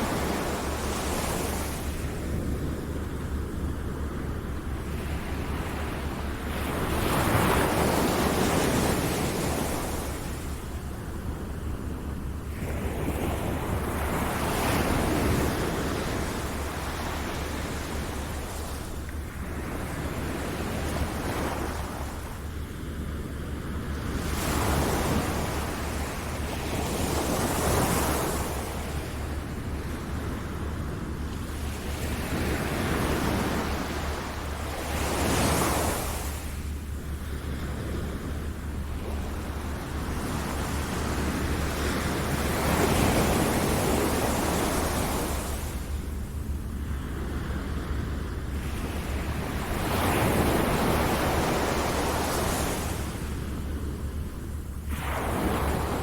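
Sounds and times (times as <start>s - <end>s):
ocean waves washing onto shore: 0.0s - 56.0s.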